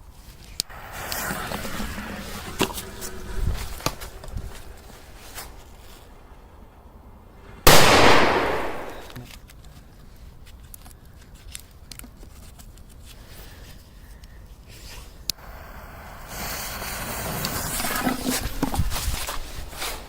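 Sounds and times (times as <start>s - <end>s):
hiss: 0.6s - 4.3s, 15.3s - 18.3s
firecracker bang: 7.7s - 9.2s.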